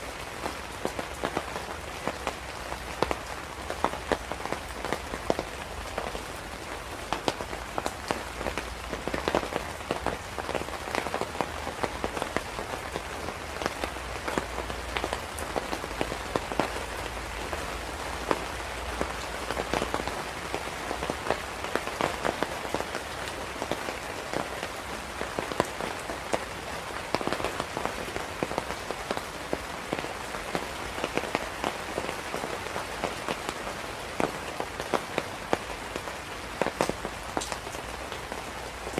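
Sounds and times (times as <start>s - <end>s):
steady rain hissing: 0.0s - 38.9s
raindrops ticking: 0.1s - 38.9s.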